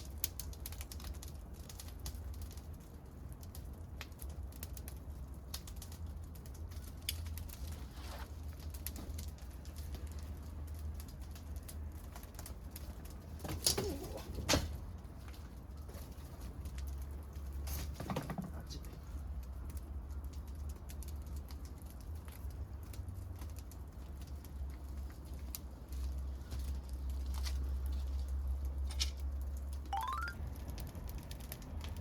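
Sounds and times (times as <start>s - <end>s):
loud fire pops: 0.0s - 18.7s
bonfire crackling and snapping: 0.0s - 32.0s.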